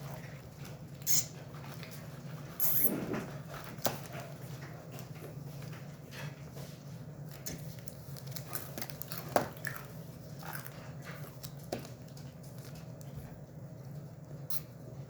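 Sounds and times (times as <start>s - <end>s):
wet mouth noises: 1.1s - 1.3s, 14.5s - 14.7s
person chewing food: 7.3s - 13.2s.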